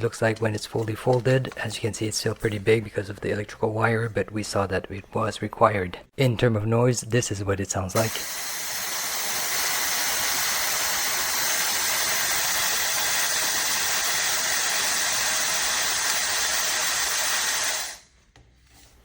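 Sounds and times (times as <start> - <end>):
hair dryer blowing with whine: 8.1 - 18.0.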